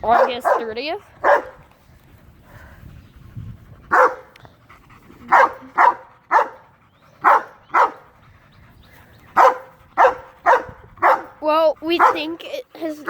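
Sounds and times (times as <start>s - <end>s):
dog barking: 0.1s - 1.6s, 3.9s - 4.3s, 5.3s - 6.6s, 7.2s - 8.0s, 9.4s - 11.4s, 12.0s - 12.3s.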